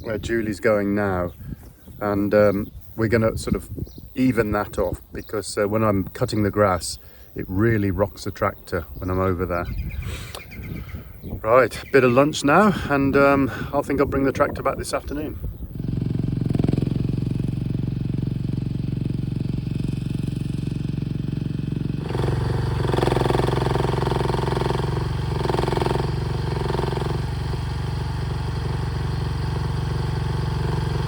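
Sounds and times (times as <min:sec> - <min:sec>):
higher engine tone: 0:15.5 - 0:31.0
excavator engine running: 0:15.7 - 0:31.0.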